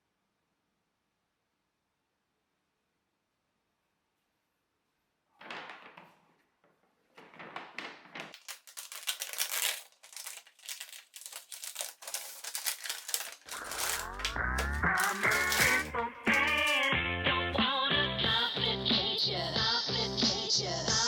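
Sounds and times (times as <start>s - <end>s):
paper and plastic crinkling: 7.2s - 17.0s
background music with bass: 14.0s - 21.0s.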